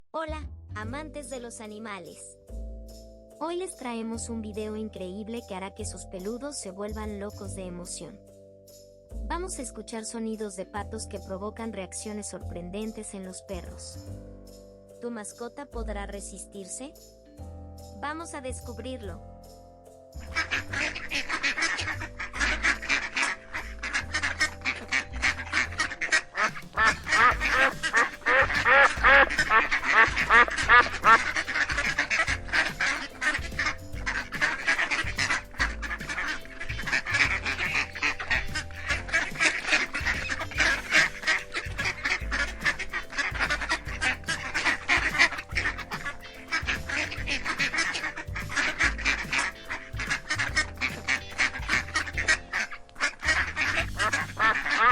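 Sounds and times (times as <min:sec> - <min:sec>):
ducks quacking: 0:20.3 - 0:54.9.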